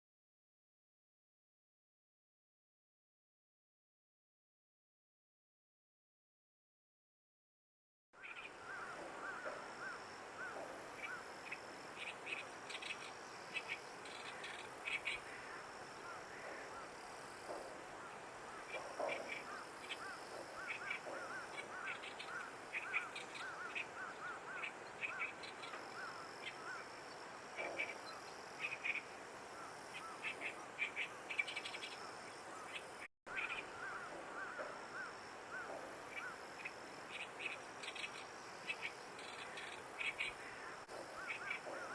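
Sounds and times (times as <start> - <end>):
sharp clicky animal calls: 8.2 - 26.9, 27.5 - 29.1, 29.9 - 32.0, 32.6 - 41.9
animal chirps: 32.7 - 40.4.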